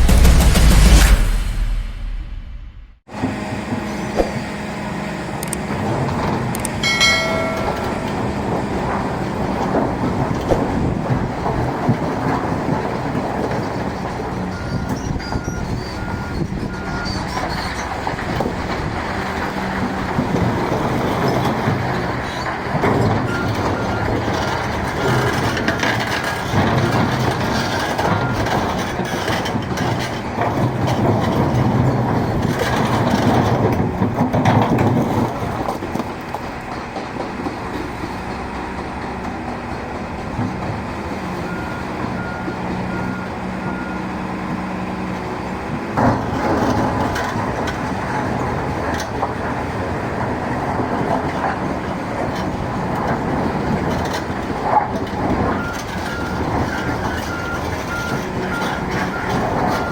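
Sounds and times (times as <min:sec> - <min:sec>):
sharp knock: 0:00.0 - 0:03.0
excavator diesel engine: 0:00.0 - 0:59.9
reversing alarm beeping: 0:06.7 - 0:08.5, 0:55.5 - 0:59.9
stone crusher running: 0:06.7 - 0:09.9.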